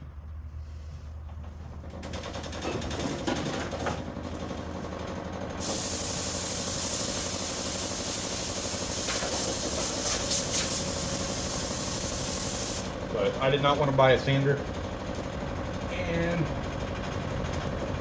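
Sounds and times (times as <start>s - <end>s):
harsh sanding hiss: 5.6s - 12.9s.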